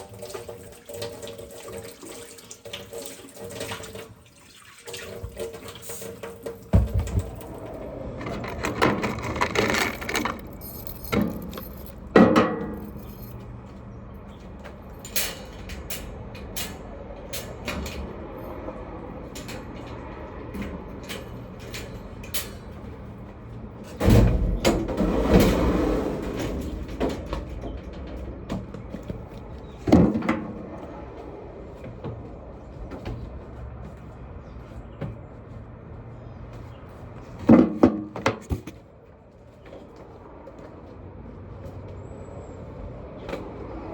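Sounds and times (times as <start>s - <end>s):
knocks and clicks of handled objects: 6.2s - 13.5s.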